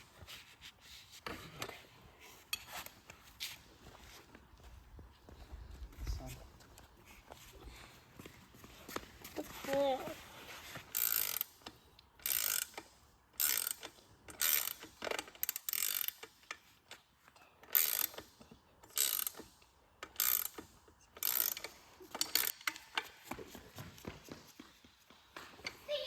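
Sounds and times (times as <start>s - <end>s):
ratchet wrench clicking: 10.9s - 16.6s, 17.6s - 22.9s.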